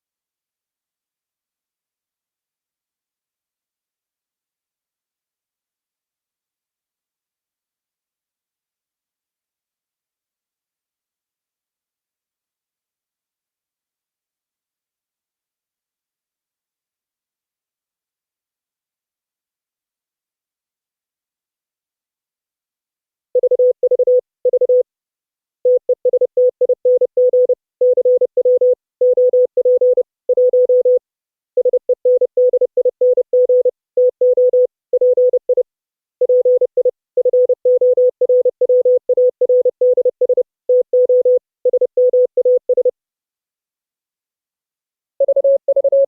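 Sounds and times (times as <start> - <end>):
morse code tone: 25.7 - 31.0, 45.2 - 46.0.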